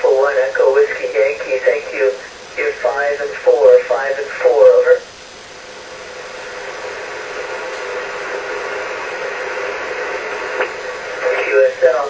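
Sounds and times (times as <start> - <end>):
radio static hiss: 0.0 - 12.0
radio click: 7.4 - 12.0.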